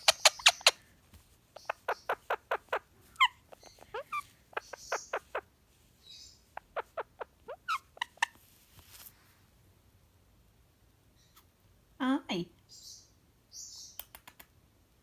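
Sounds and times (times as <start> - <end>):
parakeet squeaky chirps: 0.0 - 0.8, 1.6 - 8.4.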